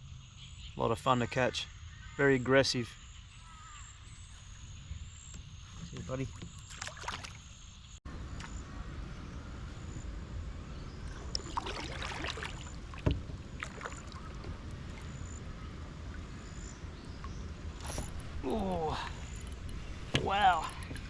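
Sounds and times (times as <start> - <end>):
water sloshing around kayak: 5.8 - 7.6, 10.7 - 21.0
steady low rumble: 8.1 - 21.0
sharp knock on kayak: 13.0 - 13.3.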